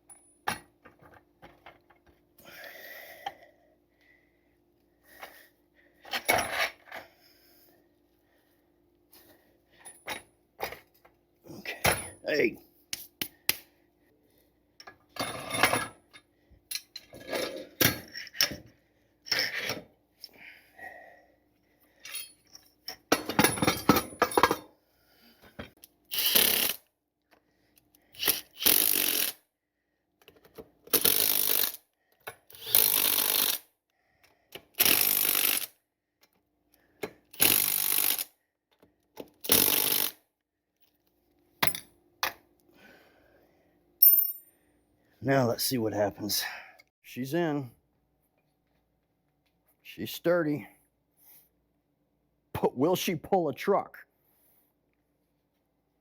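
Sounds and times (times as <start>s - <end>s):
parts knocking and clattering: 0.0s - 2.2s, 14.8s - 18.7s, 22.0s - 24.7s
power tool bursts: 26.1s - 26.8s, 28.2s - 29.3s, 37.4s - 38.2s, 39.5s - 40.1s.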